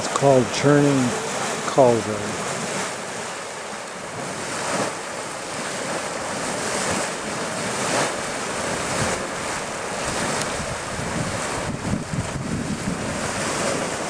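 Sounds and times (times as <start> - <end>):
hot spring water churning: 0.0 - 14.0
wind on microphone: 4.1 - 14.0.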